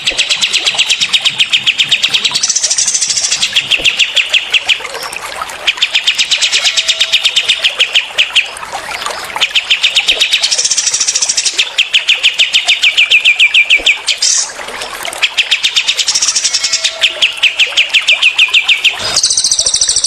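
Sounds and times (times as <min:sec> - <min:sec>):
songbirds trilling: 0:00.0 - 0:20.0.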